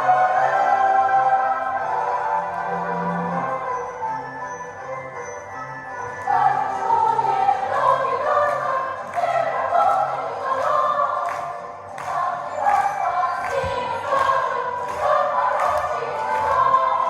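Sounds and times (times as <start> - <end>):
choir singing: 0.0 - 3.8, 6.2 - 17.0
music: 0.0 - 17.0.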